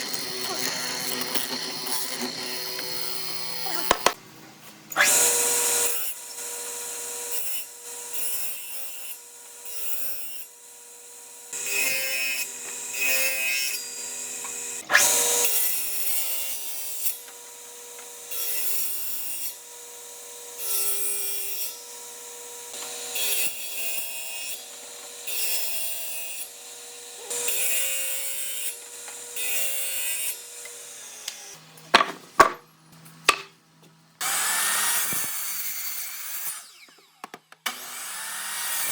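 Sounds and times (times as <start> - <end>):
power tool rasping wood: 0.0 - 4.2, 34.2 - 38.9.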